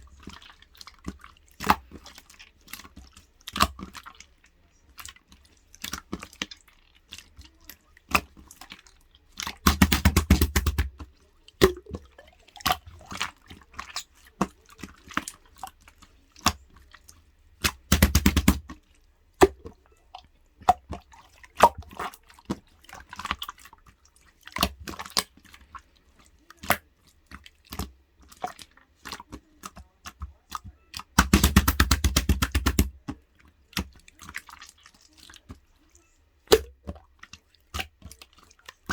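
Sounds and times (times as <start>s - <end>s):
slime clicking and popping: 9.5s - 11.0s, 11.6s - 12.0s, 17.6s - 18.8s, 19.4s - 19.8s, 31.0s - 33.1s, 36.5s - 37.0s
slime crackling pops: 9.6s - 10.9s, 17.6s - 18.7s, 31.2s - 33.0s, 36.5s - 36.8s.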